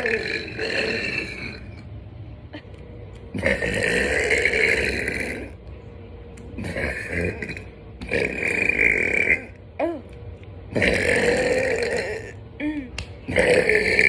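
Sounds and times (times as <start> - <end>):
woman burping loudly: 0.0 - 1.6, 10.8 - 14.0.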